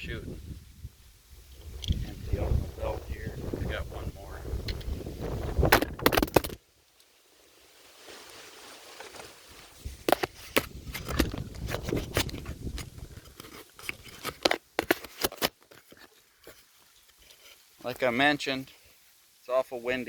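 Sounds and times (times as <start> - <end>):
wind rumbling on microphone: 0.0 - 6.6, 9.7 - 14.2
crunching and clicking handling noises: 5.8 - 6.6, 8.9 - 18.1.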